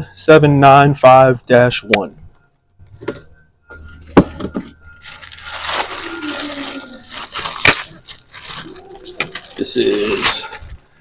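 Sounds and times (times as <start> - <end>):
paper and cardboard rustling: 4.2 - 10.9.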